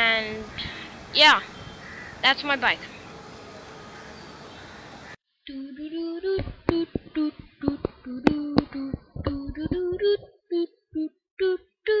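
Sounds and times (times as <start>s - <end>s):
high voice singing: 5.4s - 12.0s.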